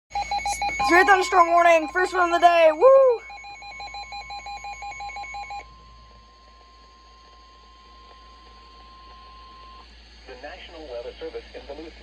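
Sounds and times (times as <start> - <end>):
rapid electronic beeping: 0.1 - 6.5
steady alarm tone: 0.1 - 9.9.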